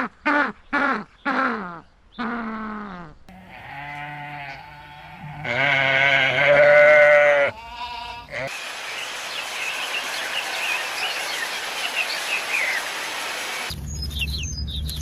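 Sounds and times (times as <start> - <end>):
livestock bleating: 2.8 - 8.5.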